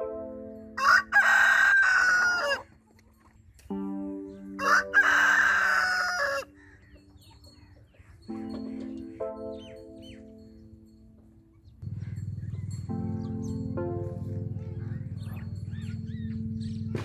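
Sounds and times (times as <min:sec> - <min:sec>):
rooster crowing: 0:00.8 - 0:02.7, 0:04.6 - 0:06.6.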